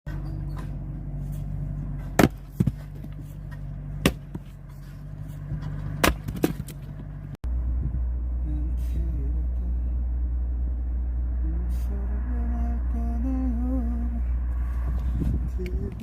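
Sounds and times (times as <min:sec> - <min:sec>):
engine hum: 0:00.0 - 0:16.0
deep steady hum: 0:00.1 - 0:16.0
axe splitting firewood: 0:01.9 - 0:07.2.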